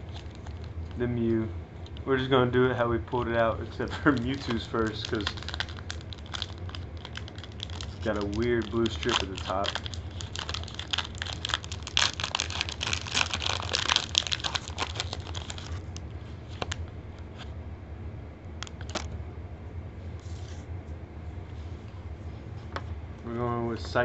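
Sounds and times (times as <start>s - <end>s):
foil wrapper tearing and crinkling: 0.0s - 0.8s, 3.8s - 16.0s, 18.6s - 19.1s
cards clicking and rustling: 3.8s - 16.8s, 18.6s - 19.1s.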